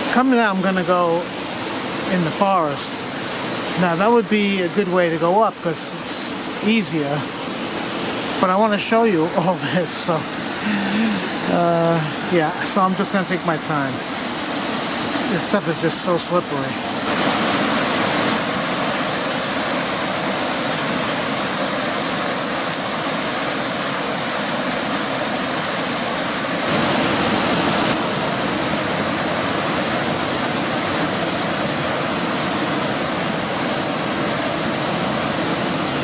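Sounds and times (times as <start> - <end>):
waterfall rushing over boulders: 0.0 - 36.0.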